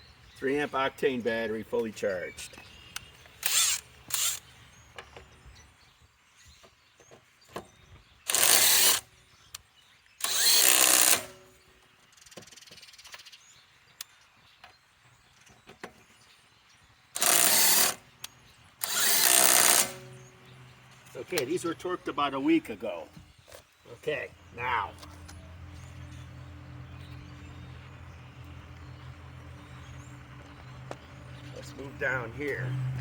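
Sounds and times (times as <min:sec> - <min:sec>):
impact wrench hammering lug nuts: 0:10.2 - 0:11.4, 0:17.2 - 0:18.0, 0:18.8 - 0:20.3.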